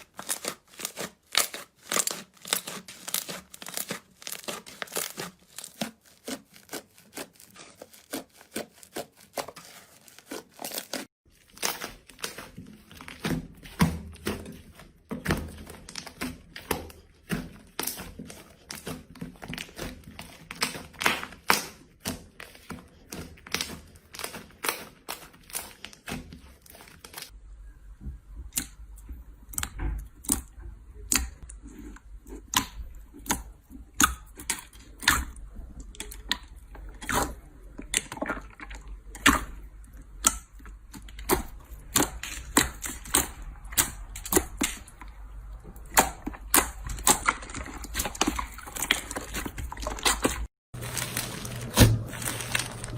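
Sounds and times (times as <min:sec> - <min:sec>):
slime crackling and popping: 0:00.0 - 0:14.3, 0:32.4 - 0:52.9.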